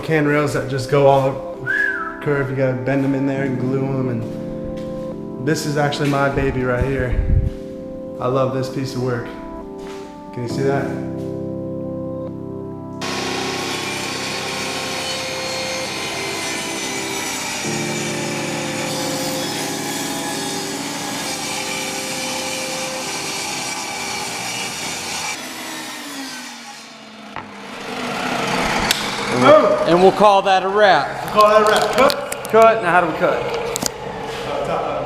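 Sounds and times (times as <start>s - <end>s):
background music: 0.0s - 26.1s, 28.6s - 35.0s
power saw cutting wood: 13.0s - 30.4s.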